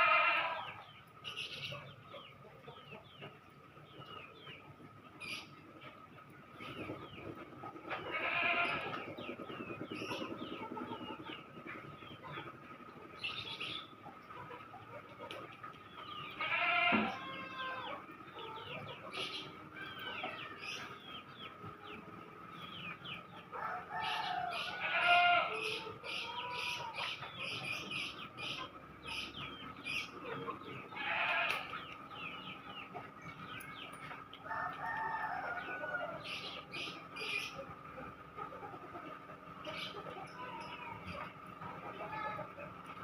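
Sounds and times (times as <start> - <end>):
roosters crowing: 0.0 - 2.4, 6.7 - 9.3, 16.0 - 43.0
chicken chirps and clucks: 0.6 - 8.1, 8.8 - 43.0.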